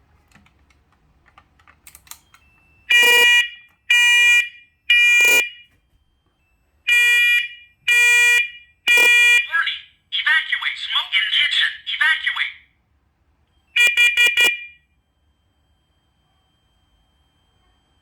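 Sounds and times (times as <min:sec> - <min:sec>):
smoke alarm beeping: 0:02.1 - 0:12.4, 0:13.5 - 0:15.0.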